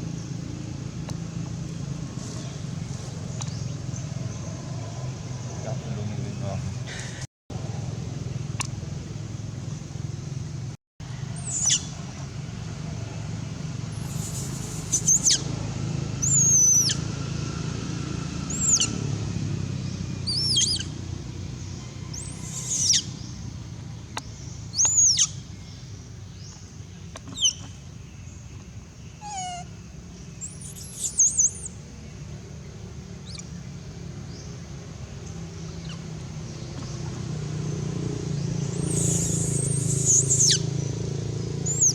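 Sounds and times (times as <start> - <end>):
baby monkey crying: 29.2 - 29.7, 38.8 - 40.6.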